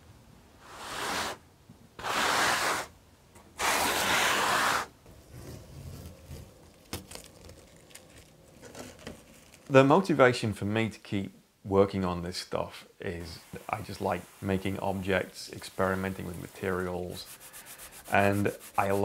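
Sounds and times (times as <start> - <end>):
long rasping strokes: 13.4 - 19.0.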